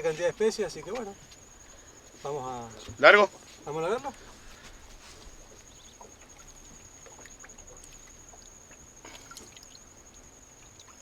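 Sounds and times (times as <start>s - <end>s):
high-pitched insect trill: 0.0s - 11.0s
small ticks: 0.0s - 11.0s
water drips and splashes: 2.8s - 11.0s.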